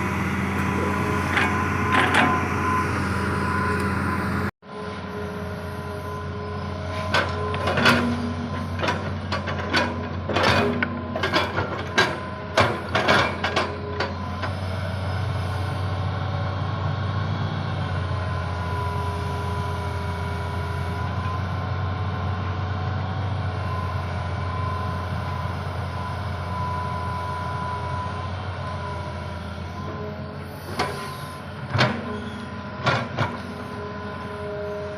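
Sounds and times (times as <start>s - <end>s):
excavator diesel engine running: 0.0s - 34.9s.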